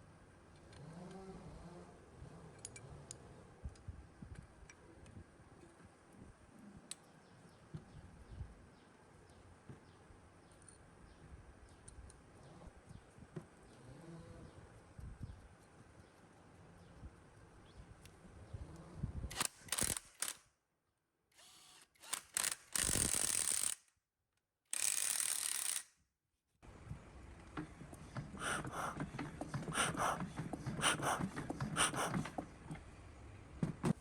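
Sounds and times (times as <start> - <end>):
repeated clicks and rasps: 27.4 - 32.9.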